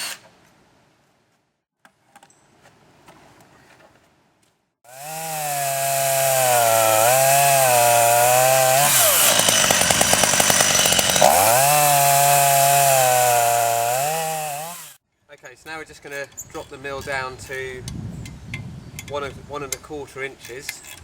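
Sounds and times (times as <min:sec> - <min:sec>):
chainsaw ripping log: 0:04.9 - 0:15.0.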